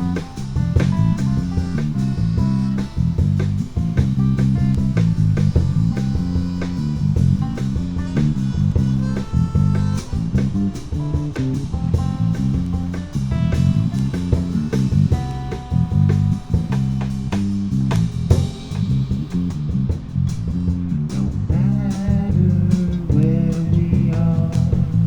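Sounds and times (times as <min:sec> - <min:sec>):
electric guitar playing: 0:00.0 - 0:19.7
bass guitar line: 0:00.0 - 0:25.0.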